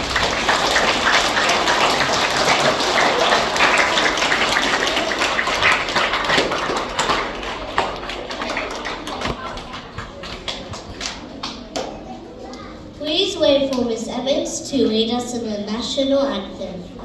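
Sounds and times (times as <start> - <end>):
children clapping: 0.0 - 12.1.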